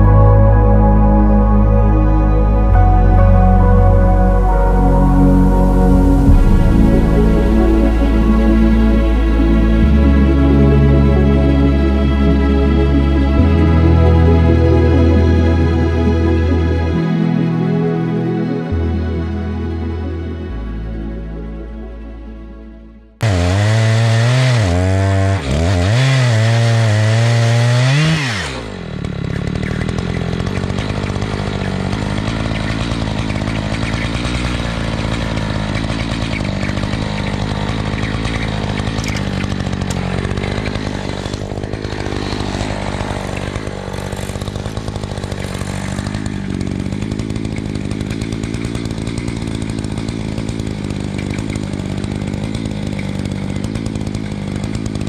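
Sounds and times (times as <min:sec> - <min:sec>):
chainsaw cutting through log: 0:05.3 - 0:17.5, 0:23.2 - 0:55.0.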